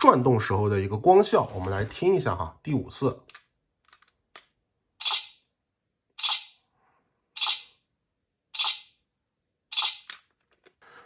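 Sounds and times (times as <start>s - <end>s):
toy belt electronic pulses: 5.0s - 5.4s, 6.2s - 6.6s, 7.4s - 7.8s, 8.6s - 9.0s, 9.7s - 10.1s.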